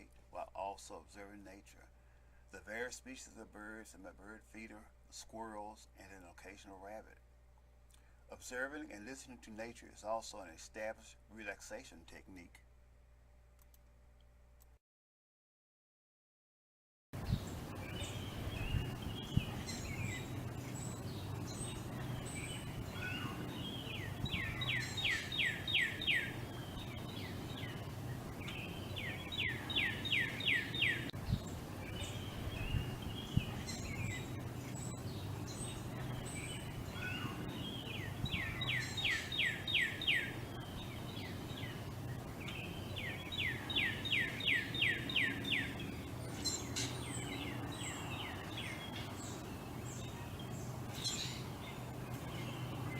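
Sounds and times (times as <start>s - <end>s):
soft bird chirps: 17.2s - 52.9s
steady low hum: 17.2s - 52.9s
songbird whistling phrase: 22.3s - 27.8s, 28.4s - 31.1s, 36.2s - 41.7s.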